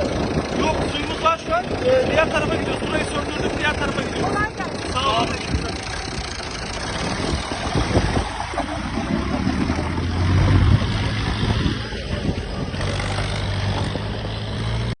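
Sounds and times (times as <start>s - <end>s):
vehicle engine humming: 0.0s - 15.0s.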